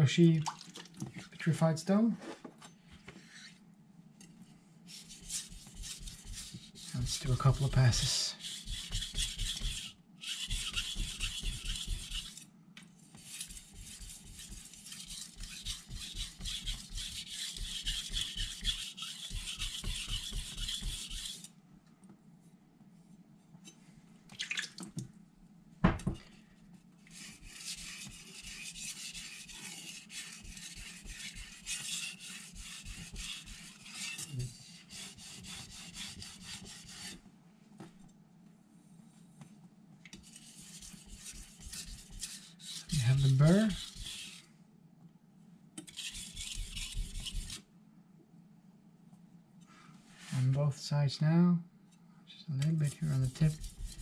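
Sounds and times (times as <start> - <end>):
knife scraping on whetstone: 8.0 - 12.4, 13.2 - 21.5, 27.1 - 37.2, 40.3 - 44.4, 45.8 - 47.6, 52.7 - 54.0.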